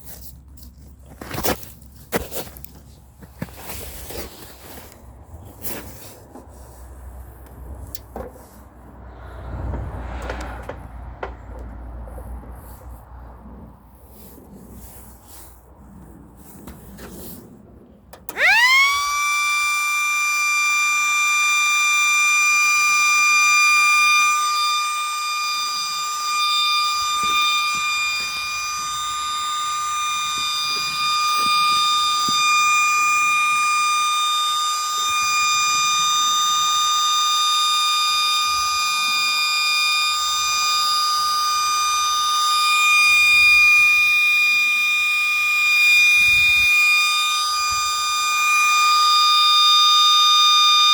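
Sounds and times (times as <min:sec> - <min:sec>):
siren high-pitched tone: 0:18.2 - 0:50.9.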